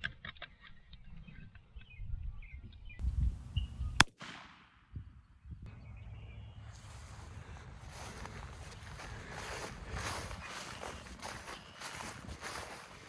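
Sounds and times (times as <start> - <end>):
shotgun shot with echo: 4.0 - 4.8.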